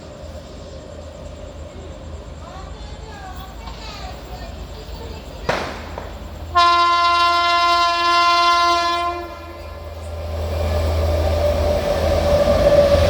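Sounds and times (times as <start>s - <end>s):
train rumble: 0.0s - 13.0s
locomotive horn blast: 6.5s - 10.0s.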